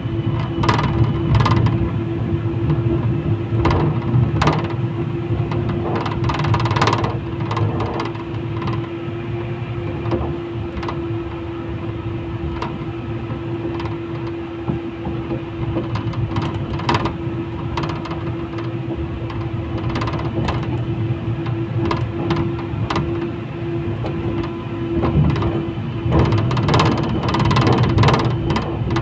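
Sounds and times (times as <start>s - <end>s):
irregular clicks and knocks: 5.5s - 8.9s, 12.5s - 23.3s, 23.9s - 29.0s.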